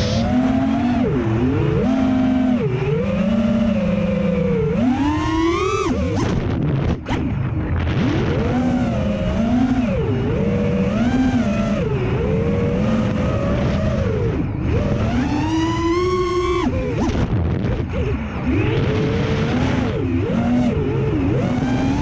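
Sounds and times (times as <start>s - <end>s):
quadcopter motors whining: 0.0s - 7.6s, 8.2s - 22.0s.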